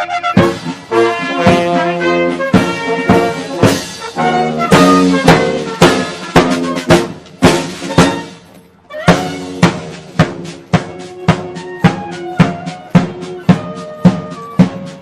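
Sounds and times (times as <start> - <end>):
sustained brass chords: 0.0 - 9.8
bass and snare drums beating: 0.1 - 15.0.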